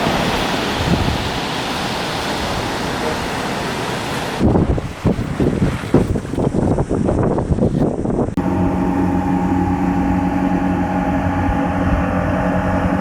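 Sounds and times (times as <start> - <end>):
rough wind: 0.0 - 13.0
water noise: 0.0 - 13.0
engine drone: 8.3 - 13.0.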